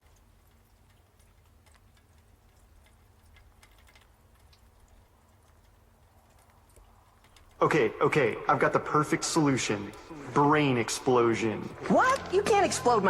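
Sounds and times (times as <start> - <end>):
low hum: 7.4 - 13.0.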